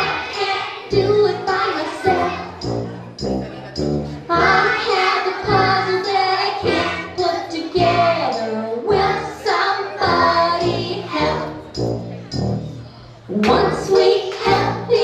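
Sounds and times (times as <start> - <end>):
children singing: 0.0 - 2.8, 4.3 - 11.6, 13.3 - 15.0
instrumental accompaniment: 0.9 - 15.0.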